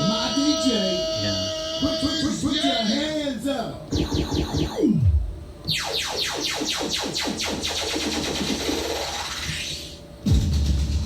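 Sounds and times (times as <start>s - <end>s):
falling electronic sweep: 3.9s - 10.0s
descending electronic zaps: 5.7s - 10.4s
bass hit: 10.2s - 11.0s.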